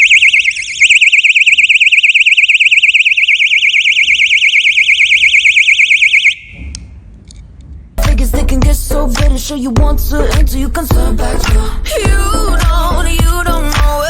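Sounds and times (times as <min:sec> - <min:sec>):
personal alarm warbling siren: 0:00.0 - 0:06.7.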